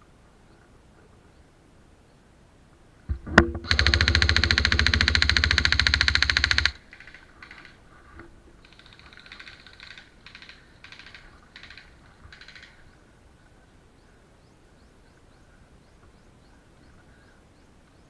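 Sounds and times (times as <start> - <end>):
airsoft gun full-auto bursts: 3.6 - 7.8, 8.7 - 12.8.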